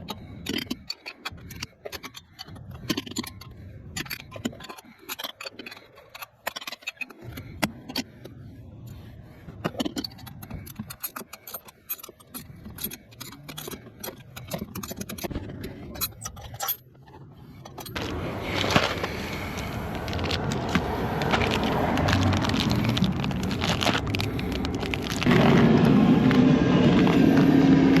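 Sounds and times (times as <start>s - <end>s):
metallic clicks of hand tools: 0.0s - 8.1s, 9.6s - 16.8s.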